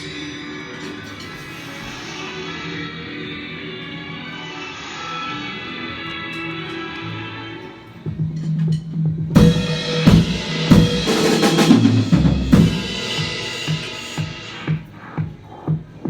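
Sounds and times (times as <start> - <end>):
loud drum hits: 9.4 - 14.9
crashing percussion: 9.4 - 15.1.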